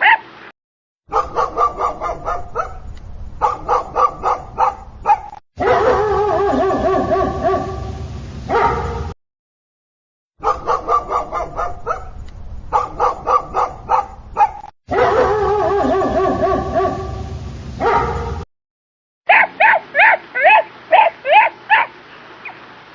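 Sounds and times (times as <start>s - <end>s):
dogs barking and yipping: 0.0s - 0.3s, 1.1s - 7.9s, 8.5s - 9.2s, 10.4s - 17.2s, 17.8s - 18.4s, 19.3s - 22.6s
dogs drawn-out cries: 0.0s - 0.4s, 1.1s - 2.8s, 3.4s - 7.8s, 10.4s - 12.1s, 12.8s - 17.1s, 19.3s - 22.6s.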